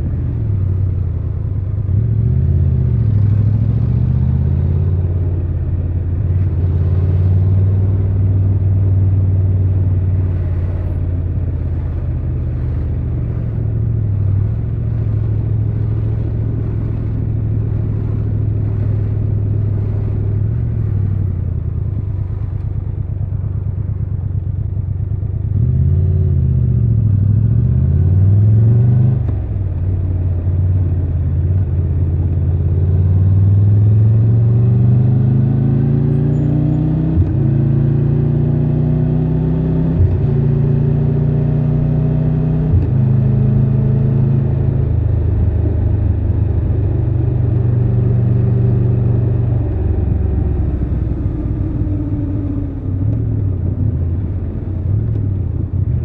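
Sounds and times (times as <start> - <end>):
motorcycle engine running: 4.9 - 27.8.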